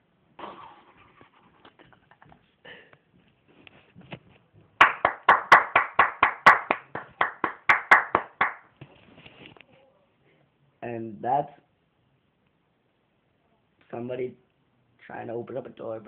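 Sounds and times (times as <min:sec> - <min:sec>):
hands clapping: 0:04.8 - 0:08.7.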